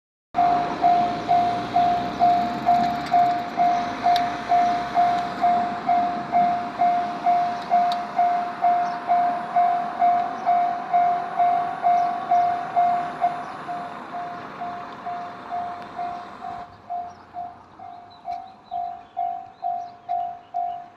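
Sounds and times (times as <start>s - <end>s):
level-crossing warning bell: 0.4s - 20.9s.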